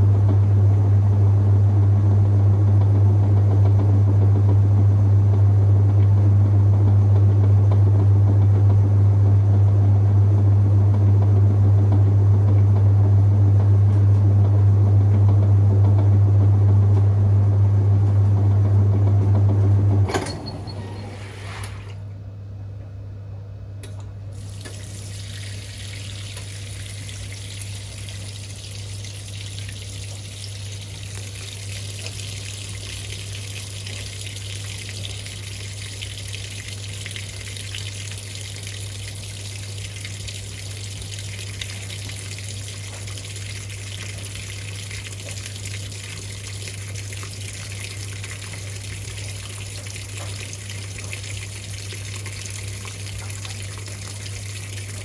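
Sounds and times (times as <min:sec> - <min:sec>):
water rushing into washing machine: 0:00.0 - 0:22.2, 0:23.8 - 0:55.0.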